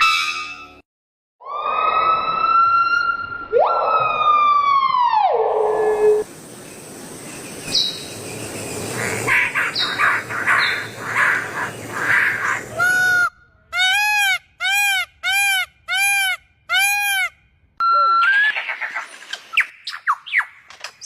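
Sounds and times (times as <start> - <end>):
bird chirps: 6.0 - 13.2
bird wailing calls: 8.9 - 17.3.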